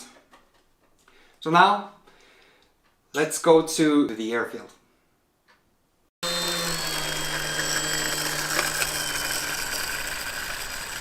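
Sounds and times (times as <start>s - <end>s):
model airplane motor whining: 6.2s - 11.0s.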